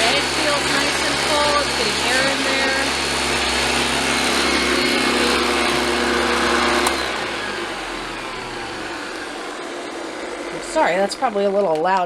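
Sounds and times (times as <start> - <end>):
vacuum cleaner motor running: 0.0 - 12.0
vacuum cleaner switch click: 6.7 - 7.2.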